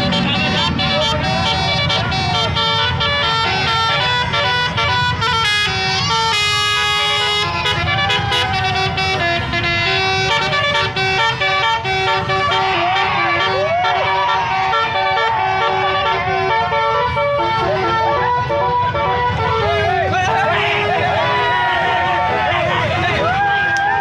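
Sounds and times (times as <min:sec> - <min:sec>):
bus horns playing a melody: 0:00.0 - 0:23.6.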